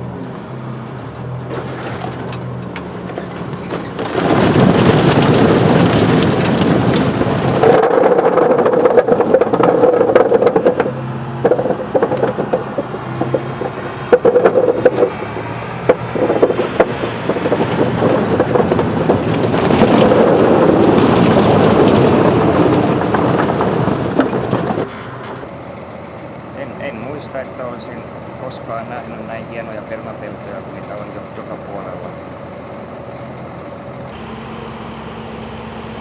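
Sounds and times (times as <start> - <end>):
harvester clattering and rattling: 0.0 - 36.0
tractor engine drone: 0.0 - 36.0.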